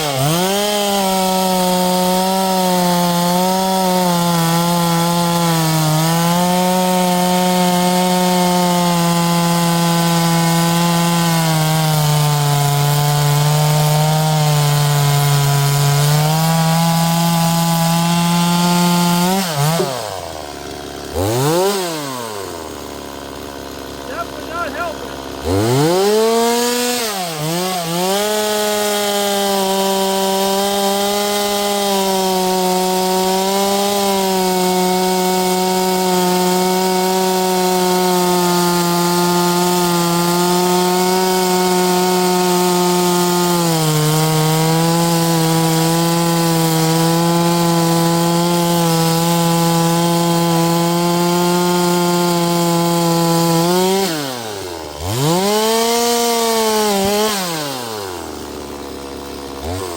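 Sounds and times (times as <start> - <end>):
chainsaw cutting wood: 0.0 - 59.9.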